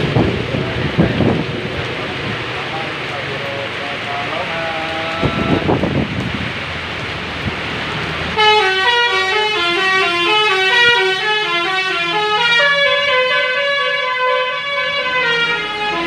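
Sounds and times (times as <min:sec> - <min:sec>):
road and engine noise: 0:00.0 - 0:16.0
bus melody horn: 0:08.4 - 0:16.0.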